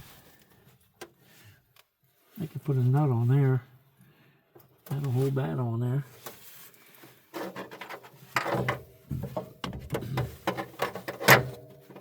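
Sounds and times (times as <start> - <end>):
rustling: 4.9 - 12.0.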